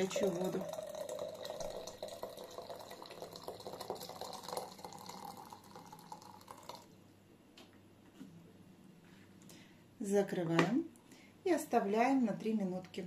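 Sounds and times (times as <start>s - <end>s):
water pouring into teapot: 0.0s - 7.0s.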